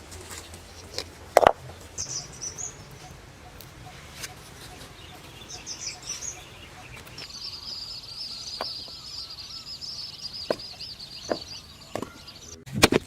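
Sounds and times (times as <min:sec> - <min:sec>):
high chirring of forest wildlife: 0:00.0 - 0:12.7
sharp knocks: 0:10.4 - 0:12.2.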